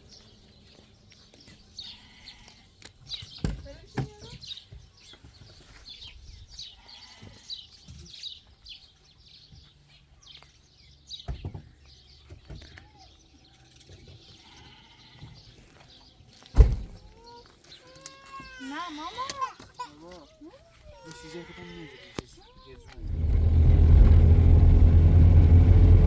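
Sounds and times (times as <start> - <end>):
sheep bleating: 14.4 - 15.3, 21.0 - 22.5.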